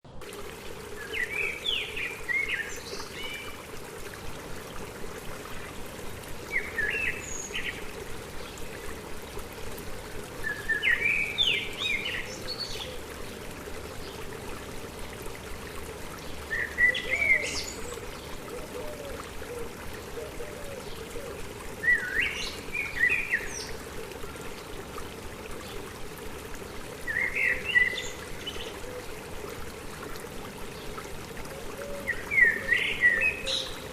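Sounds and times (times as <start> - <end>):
stream trickling: 0.1 - 33.9
songbird chirping: 5.1 - 15.1, 16.0 - 23.8, 30.8 - 33.9.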